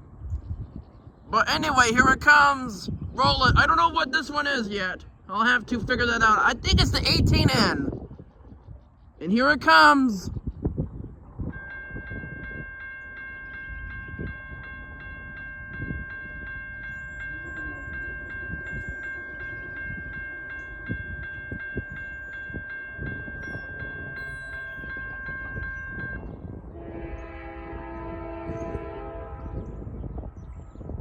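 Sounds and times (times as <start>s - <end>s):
crossing warning bell ringing: 11.5s - 29.8s
locomotive air horn: 26.7s - 29.8s.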